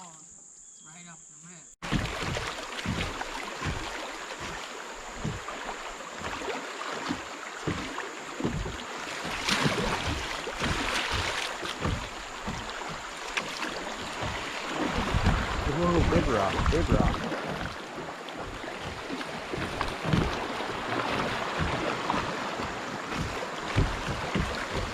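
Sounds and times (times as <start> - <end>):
river water rushing: 1.8 - 24.9
wind buffeting microphone: 13.8 - 17.8.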